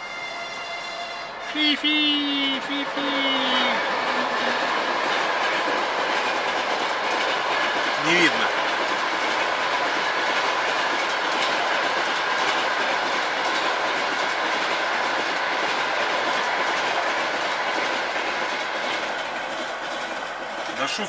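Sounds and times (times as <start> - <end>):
train wheels clattering over rails: 3.5 - 21.0.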